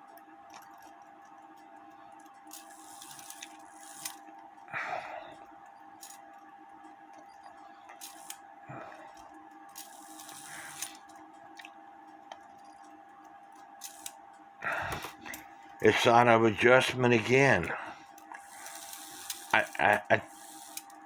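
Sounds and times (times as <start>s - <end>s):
faint steady hum: 0.0s - 21.0s
clicks and scrapes on clock mechanism: 2.6s - 4.2s, 9.8s - 11.2s, 18.2s - 21.0s.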